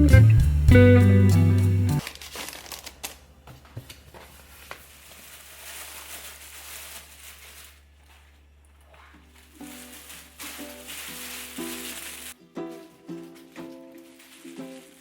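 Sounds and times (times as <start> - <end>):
plucked-string background music: 0.0 - 2.0, 9.5 - 15.0
soft hiss: 9.1 - 15.0.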